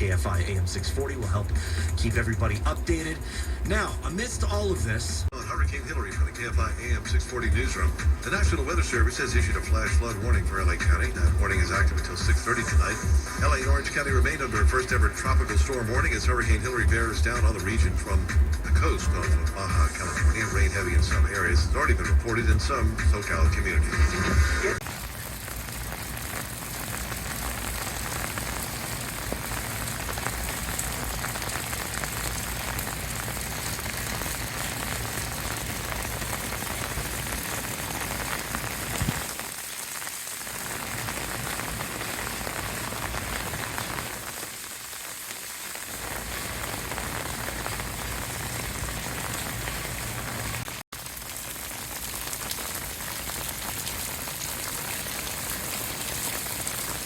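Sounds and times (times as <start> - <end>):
rain on hard surfaces: 0.0 - 57.0.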